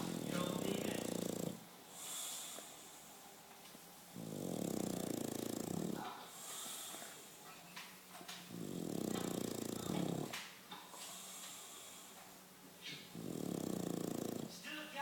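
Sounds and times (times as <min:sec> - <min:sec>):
dog snoring: 0:00.0 - 0:03.1, 0:04.2 - 0:07.4, 0:08.5 - 0:10.4, 0:13.0 - 0:14.6
breathy hisses of breath: 0:01.9 - 0:03.3, 0:06.3 - 0:07.5, 0:10.9 - 0:12.3.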